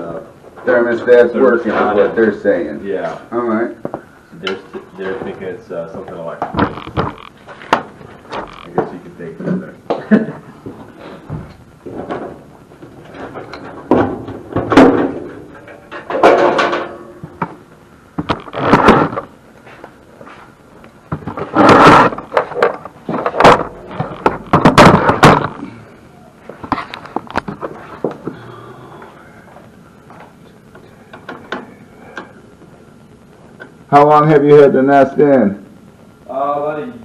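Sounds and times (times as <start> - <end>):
thuds knocks and clatters: 11.2 - 15.4, 21.1 - 25.6.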